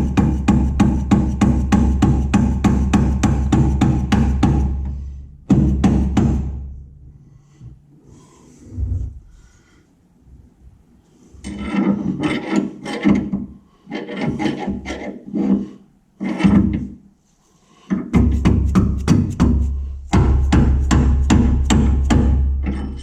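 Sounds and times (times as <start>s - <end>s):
steady low hum: 0.0s - 11.1s, 18.2s - 23.0s.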